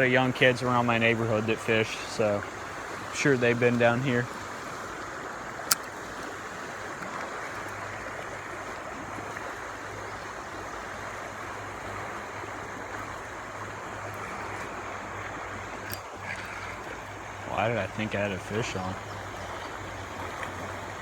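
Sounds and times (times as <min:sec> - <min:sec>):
river water rushing over rocks: 0:00.0 - 0:21.0
sharp click: 0:05.7 - 0:06.0.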